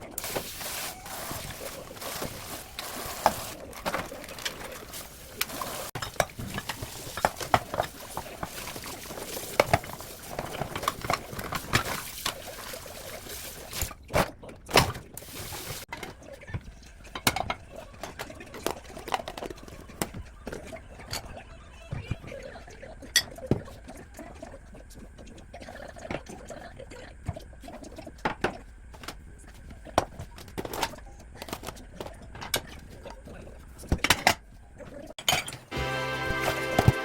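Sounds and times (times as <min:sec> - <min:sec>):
liquid pouring: 0:00.0 - 0:13.9, 0:15.2 - 0:15.9
liquid being stirred: 0:00.0 - 0:14.0
utensils tapping against dishes: 0:00.0 - 0:14.0, 0:15.2 - 0:21.4.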